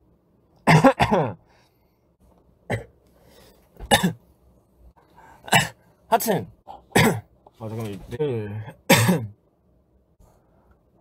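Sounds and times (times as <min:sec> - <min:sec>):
man coughing: 0:00.6 - 0:01.5, 0:02.7 - 0:03.0, 0:03.8 - 0:04.2, 0:05.4 - 0:05.9, 0:06.7 - 0:07.3, 0:08.7 - 0:09.4.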